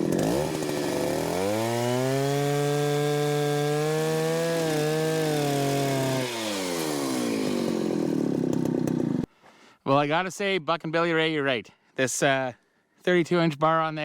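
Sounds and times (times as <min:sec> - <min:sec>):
chainsaw cutting log: 0:00.0 - 0:09.3.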